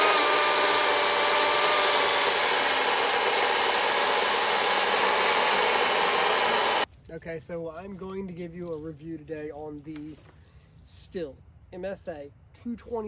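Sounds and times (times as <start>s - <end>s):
electric chainsaw cutting wood: 0.0s - 6.9s.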